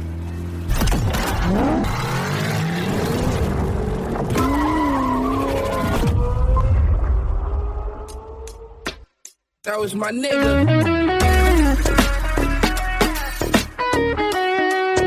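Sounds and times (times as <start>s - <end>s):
car engine revving: 0.0s - 6.4s.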